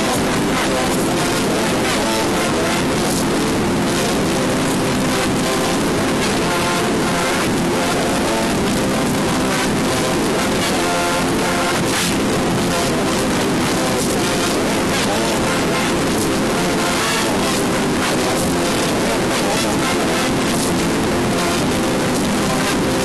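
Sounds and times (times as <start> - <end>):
loud radio static: 0.0 - 23.0
reversed garbled radio voices: 0.0 - 23.0.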